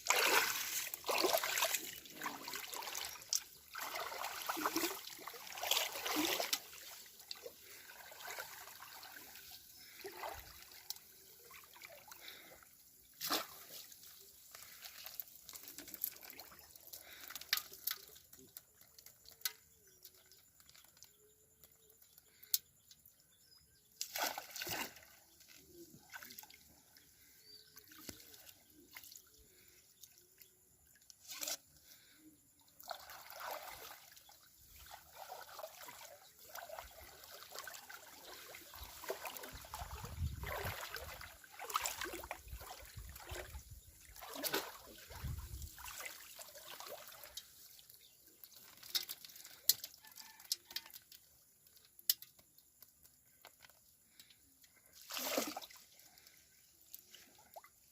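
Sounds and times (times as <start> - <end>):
water splashes: 0.0 - 18.4, 24.0 - 26.8, 32.7 - 50.9, 54.8 - 57.9
shallow water trickling: 0.0 - 23.4, 24.1 - 57.9.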